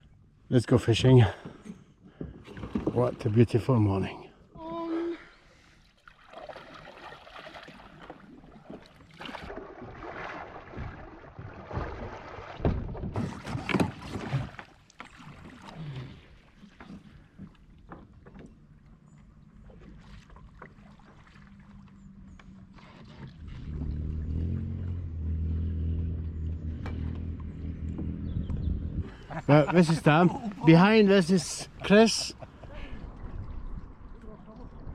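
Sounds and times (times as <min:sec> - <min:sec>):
paddle strokes: 0:05.6 - 0:24.5
water splashing: 0:05.7 - 0:17.8, 0:19.6 - 0:25.4, 0:29.3 - 0:34.9
knocks against kayak hull: 0:11.7 - 0:14.1.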